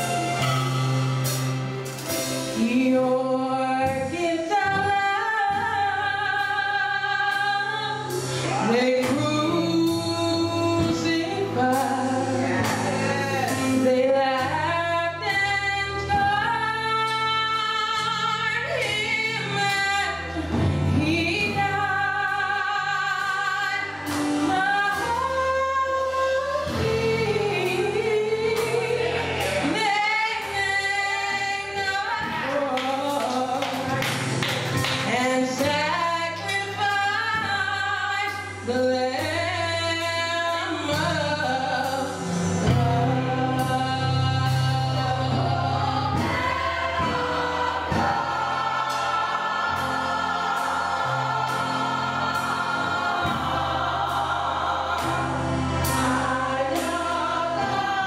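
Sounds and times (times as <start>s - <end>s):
organ accompaniment: 0.0s - 58.0s
woman singing with vibrato: 2.6s - 13.0s, 13.6s - 33.9s
choir singing: 26.5s - 32.9s, 44.6s - 58.0s.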